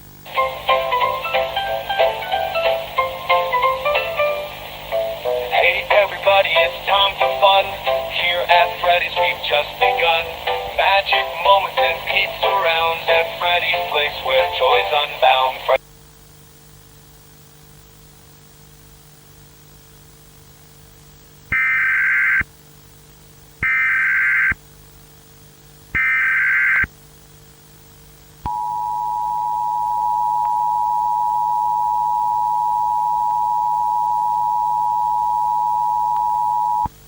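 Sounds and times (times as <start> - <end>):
faint steady hum: 0.0 - 37.0
two-tone attention signal: 28.5 - 36.9.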